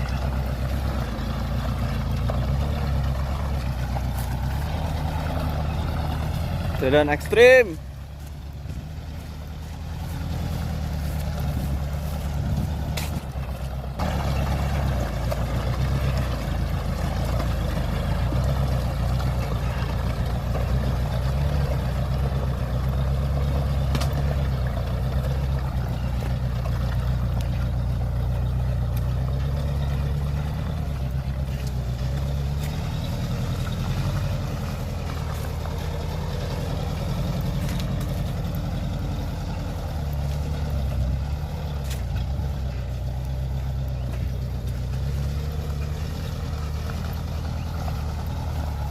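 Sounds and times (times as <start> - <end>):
vehicle engine running: 0.0 - 48.9.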